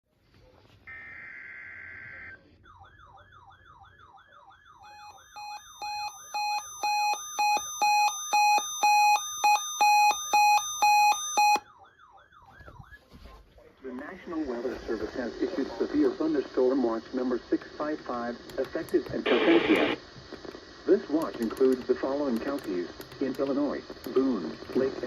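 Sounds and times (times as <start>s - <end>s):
warbling siren alarm: 0.9s - 13.0s.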